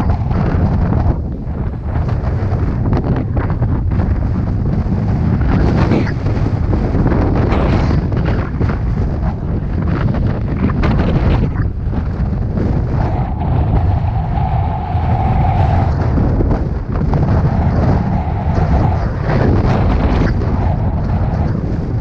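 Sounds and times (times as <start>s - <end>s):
wind buffeting microphone: 0.0s - 22.0s
mid-pitched whine: 11.0s - 22.0s.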